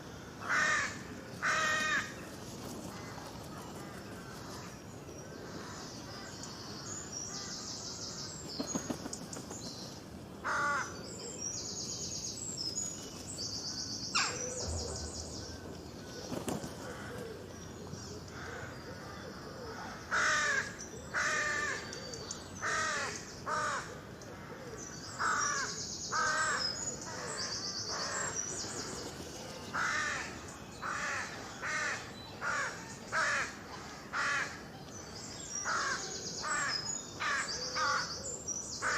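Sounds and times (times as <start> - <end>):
crows cawing: 0.1 - 2.1, 10.4 - 10.9, 19.7 - 21.8, 22.6 - 26.6, 29.8 - 34.6
small birds chirping: 1.3 - 33.8.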